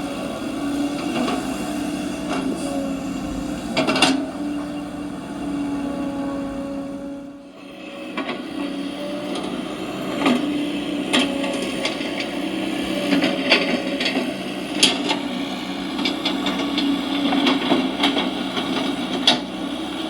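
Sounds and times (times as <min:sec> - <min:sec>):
hydraulic pump whine: 0:00.0 - 0:17.2
machine clacks and knocks: 0:02.3 - 0:05.1.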